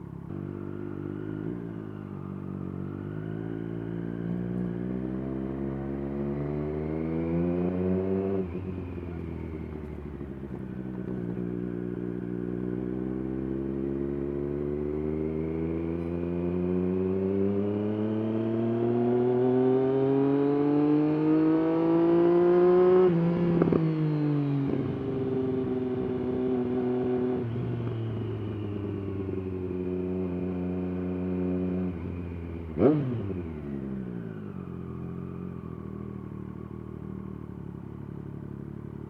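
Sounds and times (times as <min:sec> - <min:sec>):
motorcycle engine revving: 0:00.0 - 0:39.0.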